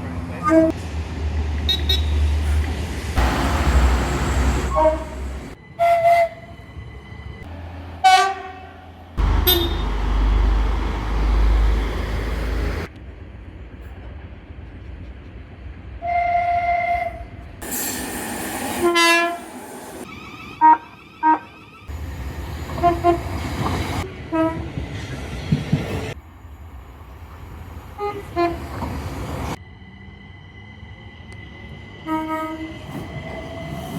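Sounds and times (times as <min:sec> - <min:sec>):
passing trains rumbling: 0:00.0 - 0:33.9
train horn blasts: 0:03.2 - 0:06.5, 0:08.0 - 0:10.4, 0:16.0 - 0:17.4, 0:18.8 - 0:19.6, 0:20.6 - 0:21.5, 0:22.7 - 0:23.4, 0:24.0 - 0:24.8, 0:28.0 - 0:28.7, 0:32.0 - 0:32.7.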